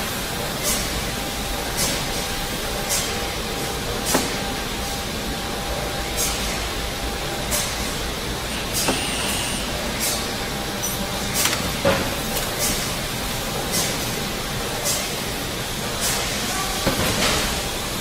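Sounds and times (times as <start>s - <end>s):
sharp knocks and clanks: 8.7s - 9.4s.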